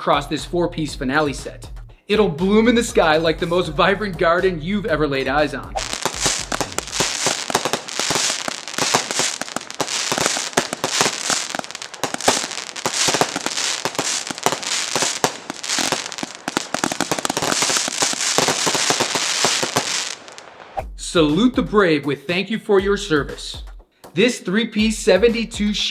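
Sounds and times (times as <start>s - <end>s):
fireworks barrage of bangs: 5.8s - 20.8s
fireworks crackling: 5.8s - 20.8s.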